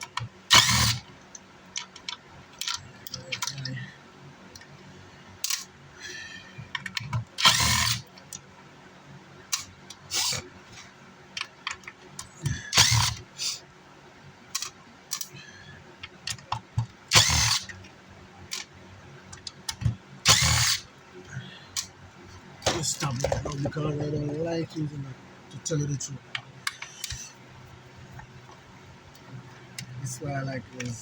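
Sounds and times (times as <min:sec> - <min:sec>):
electric screwdriver whirring: 0:00.5 - 0:01.0, 0:07.4 - 0:08.0, 0:10.1 - 0:10.4, 0:12.7 - 0:13.6, 0:17.1 - 0:17.7, 0:20.3 - 0:20.9.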